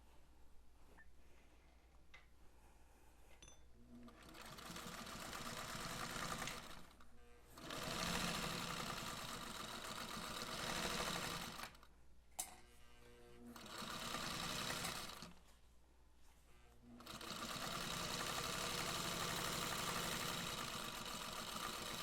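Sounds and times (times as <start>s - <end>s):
sewing machine stitching: 4.0s - 7.0s, 7.6s - 11.9s, 13.5s - 15.4s, 17.0s - 22.0s.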